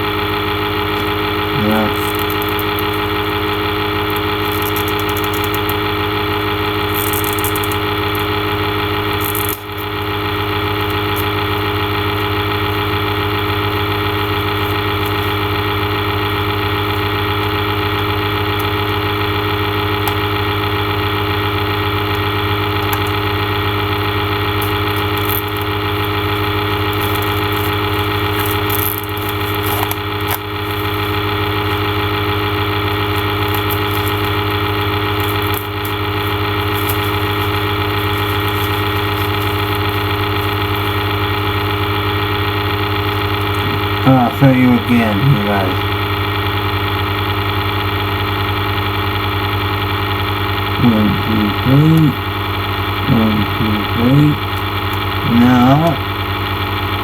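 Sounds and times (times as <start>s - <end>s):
loud mechanical hum: 0.0s - 57.0s
plastic wrap crinkling: 2.0s - 3.1s, 24.5s - 41.4s.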